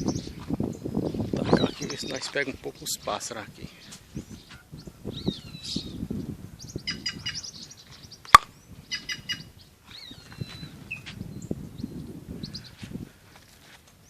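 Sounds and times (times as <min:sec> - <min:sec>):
rapid bird chirping: 0:06.6 - 0:12.8.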